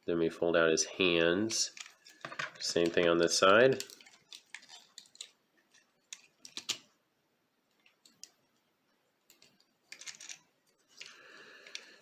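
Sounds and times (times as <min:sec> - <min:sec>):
plastic toy parts clicking: 0:06.1 - 0:06.9, 0:09.3 - 0:11.8.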